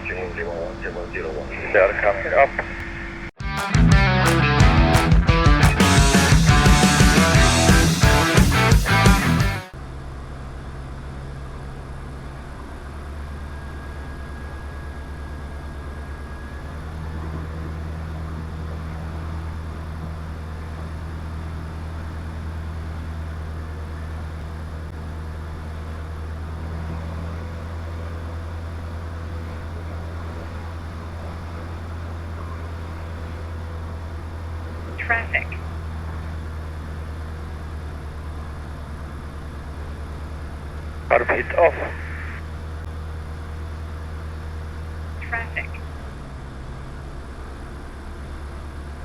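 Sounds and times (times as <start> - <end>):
aircraft engine and propeller droning: 0.0 - 3.3, 4.5 - 49.0
music: 3.4 - 9.8.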